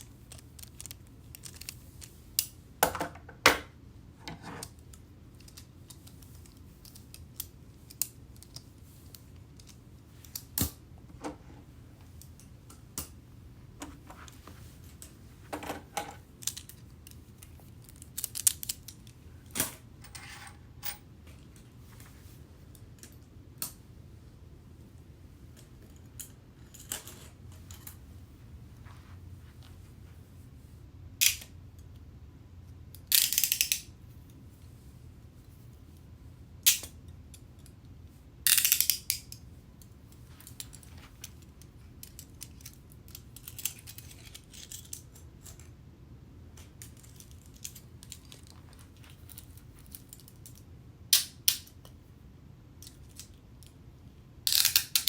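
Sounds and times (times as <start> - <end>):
handcuffs clicking: 33.0 - 33.9, 38.5 - 39.4, 54.5 - 55.0
handcuffs ratcheting rattle: 33.0 - 33.9, 38.5 - 39.4, 54.5 - 55.0.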